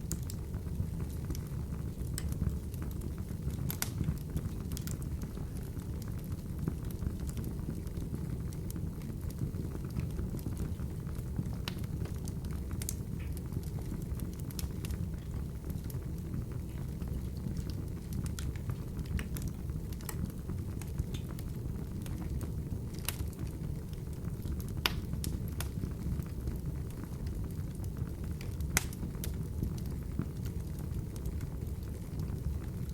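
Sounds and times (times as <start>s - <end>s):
fire crackling and popping: 0.0s - 32.9s
low rumble of flames: 0.0s - 32.9s.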